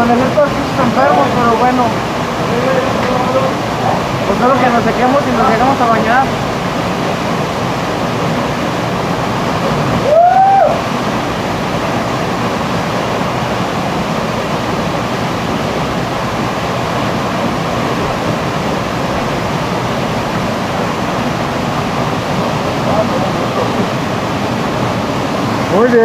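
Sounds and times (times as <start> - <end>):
waterfall rushing: 0.0 - 26.0
loud cry: 10.0 - 10.8.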